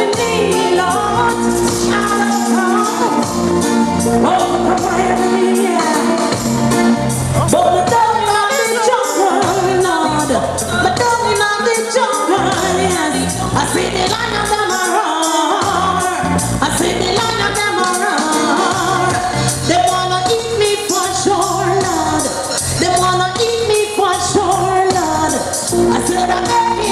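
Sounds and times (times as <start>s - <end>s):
reggae backing track: 0.0s - 26.9s
woman singing: 0.0s - 26.9s
deep bass line: 0.2s - 2.3s, 3.1s - 5.5s, 6.3s - 8.3s, 9.4s - 11.4s, 12.4s - 14.6s, 15.6s - 17.7s, 21.2s - 26.9s.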